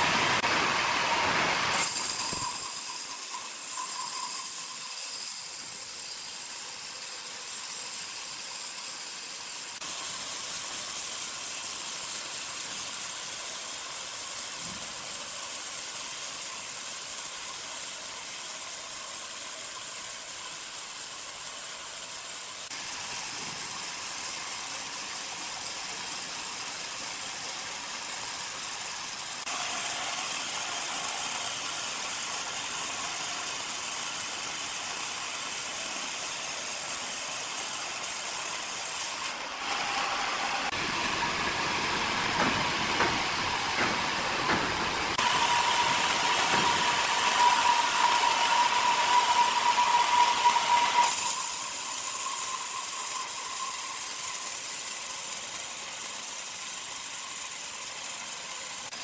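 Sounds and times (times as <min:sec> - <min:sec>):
sawmill machinery hissing: 0:00.0 - 0:59.0.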